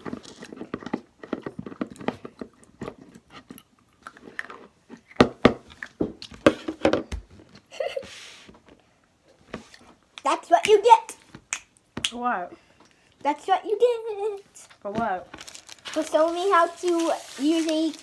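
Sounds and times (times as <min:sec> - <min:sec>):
person chewing candy: 0:00.0 - 0:05.2.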